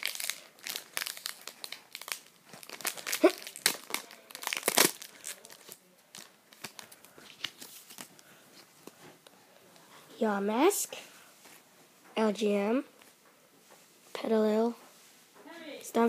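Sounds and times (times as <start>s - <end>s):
foil pack crinkling and tearing: 0.0s - 8.1s.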